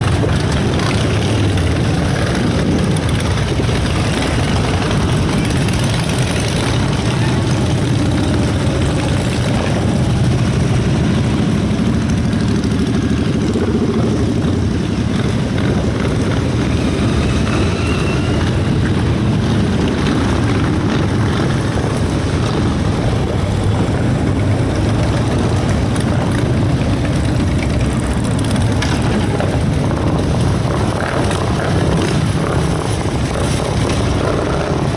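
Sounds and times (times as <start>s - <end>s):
vehicle engines driving past: 0.0s - 34.9s.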